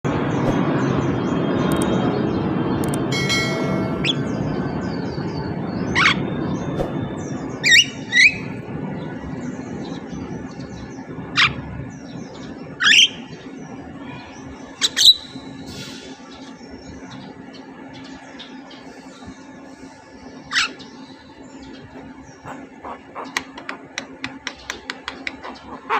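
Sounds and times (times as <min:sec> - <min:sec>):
myna bird calling: 0:20.2 - 0:25.9.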